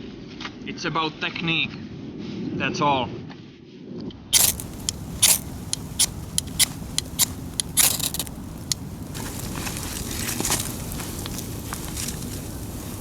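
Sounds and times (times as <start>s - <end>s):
campfire crackling and popping: 4.4s - 13.0s
steady hiss: 4.4s - 13.0s.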